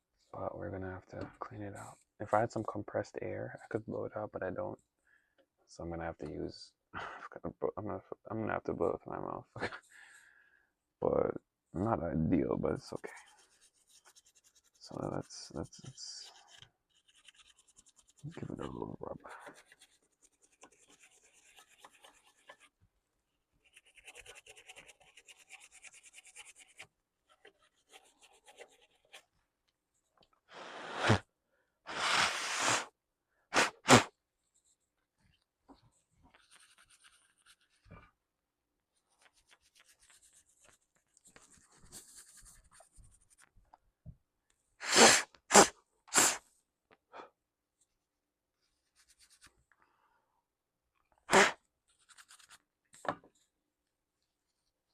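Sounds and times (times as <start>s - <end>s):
rubbing and scratching: 12.6s - 22.9s, 23.5s - 29.5s, 33.6s - 38.1s, 38.9s - 43.7s, 48.8s - 49.7s, 51.3s - 52.7s
puffs of breath blowing: 30.5s - 31.2s, 31.9s - 32.9s.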